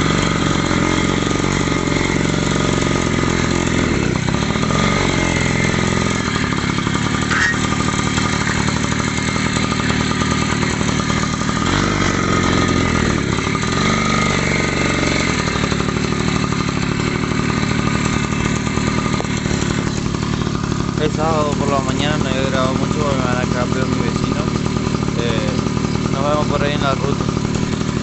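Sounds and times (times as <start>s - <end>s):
motorcycle engine idling: 0.0s - 28.0s.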